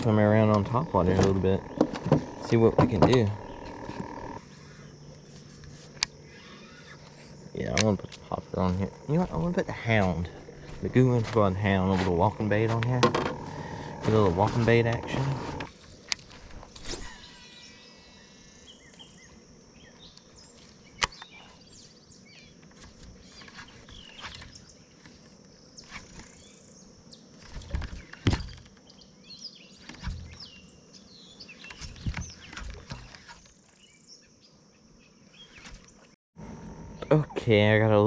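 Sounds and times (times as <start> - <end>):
faint outdoor background noise: 0.0 - 38.0
small birds chirping: 0.0 - 38.0
sharp clicks and knocks: 12.6 - 16.2.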